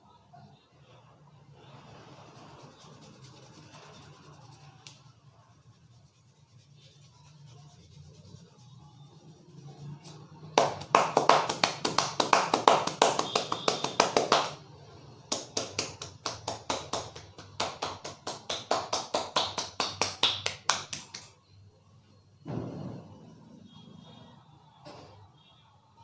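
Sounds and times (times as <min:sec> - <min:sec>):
hands slapping a head: 0:10.6 - 0:14.6, 0:15.3 - 0:21.3.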